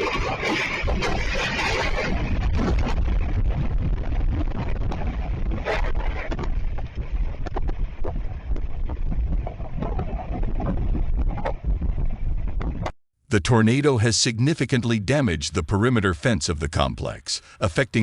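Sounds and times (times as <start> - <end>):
wind buffeting microphone: 0.0 - 12.9.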